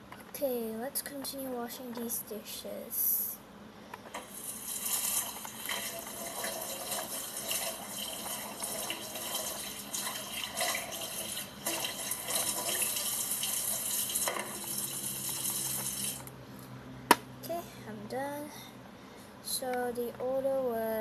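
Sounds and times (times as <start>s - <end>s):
tap water running into sink: 4.2s - 16.3s.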